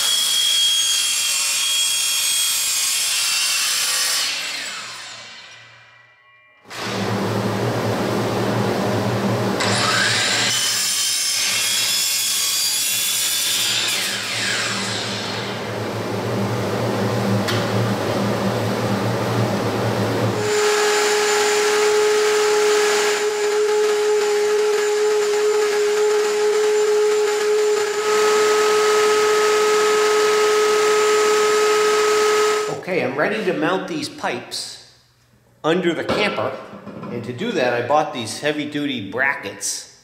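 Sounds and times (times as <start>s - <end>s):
power sander grinding pipe: 6.7s - 10.8s, 20.2s - 32.7s.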